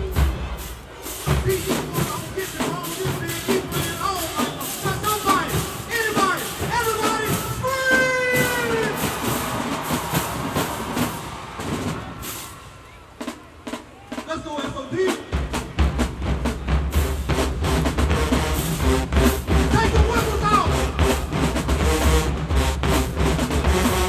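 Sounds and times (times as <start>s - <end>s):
marching band playing: 0.0s - 24.0s
heavy bass drums: 15.4s - 24.0s.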